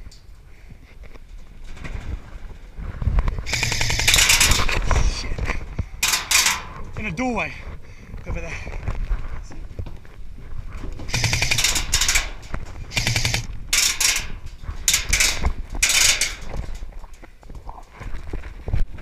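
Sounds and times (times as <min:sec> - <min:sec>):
electric rifle firing bursts: 0:03.5 - 0:04.7, 0:11.1 - 0:14.2.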